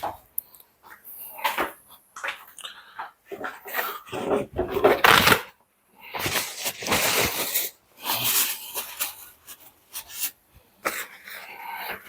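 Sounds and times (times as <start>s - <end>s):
paper crinkles: 3.4s - 5.5s, 6.1s - 12.0s
paper rustling and tearing: 4.1s - 5.5s, 6.2s - 10.4s.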